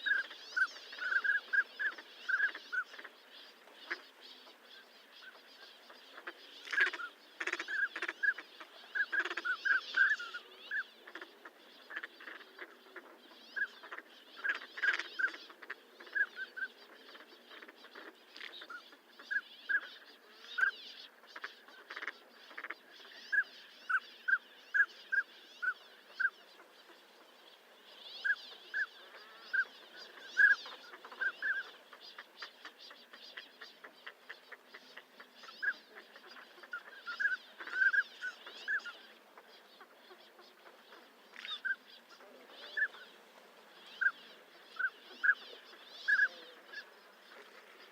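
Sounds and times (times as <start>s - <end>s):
ducks whistling calls: 0.0s - 47.9s.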